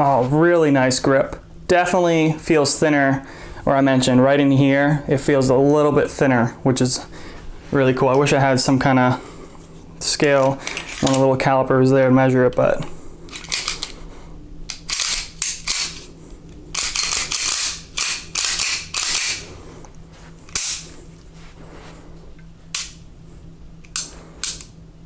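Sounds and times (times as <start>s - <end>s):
pistol metallic clicks: 14.7s - 16.0s, 16.7s - 19.4s, 20.5s - 20.9s, 22.7s - 23.0s.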